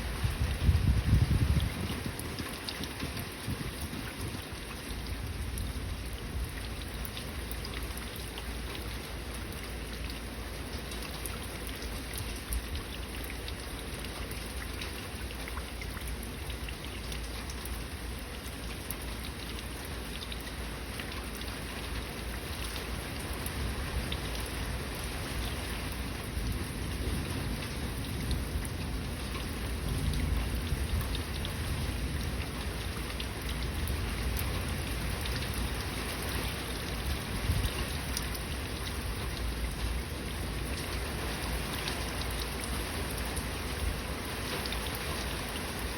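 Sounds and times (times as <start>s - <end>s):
heavy rain pattering: 0.0s - 45.9s
low thunder rumble: 26.2s - 35.7s.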